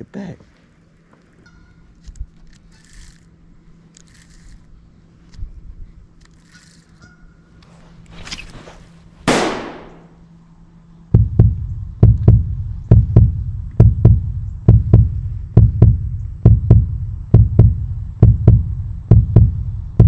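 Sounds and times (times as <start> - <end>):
heartbeat thumps: 11.1 - 20.0.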